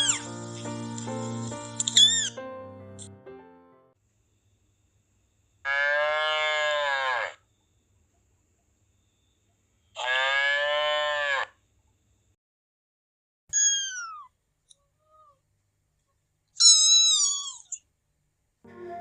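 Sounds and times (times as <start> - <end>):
cat meowing: 13.6 - 14.3.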